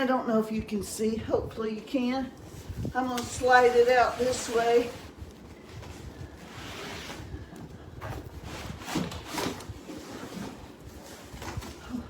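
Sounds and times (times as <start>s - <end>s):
suitcase scraping in cardboard box: 3.1s - 5.2s, 6.4s - 7.4s, 8.2s - 11.5s.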